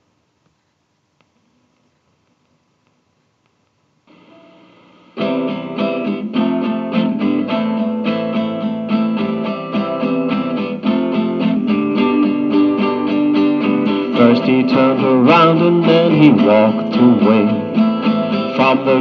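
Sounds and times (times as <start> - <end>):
faint low hum: 0.0 - 5.3
guitar strumming and picking: 4.1 - 19.0.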